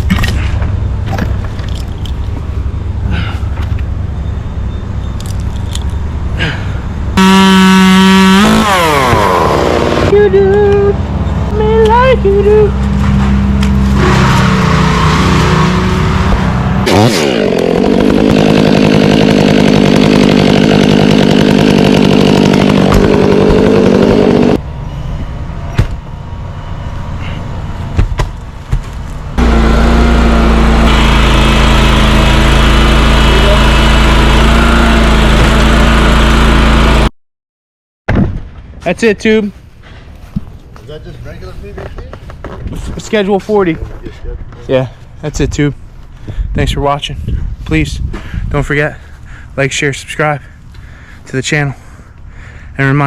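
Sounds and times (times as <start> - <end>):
chainsaw engine at high revs: 7.2 - 10.2, 14.0 - 24.6, 29.4 - 37.1.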